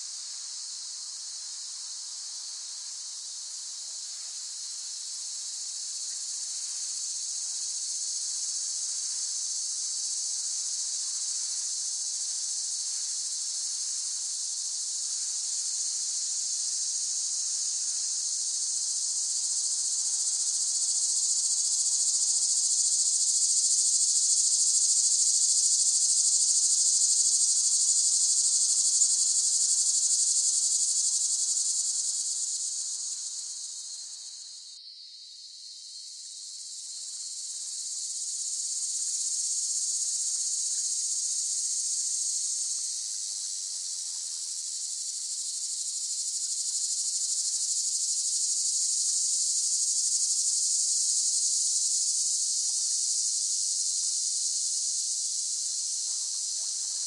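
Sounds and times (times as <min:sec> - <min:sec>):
cicadas singing: 0:14.6 - 0:57.0.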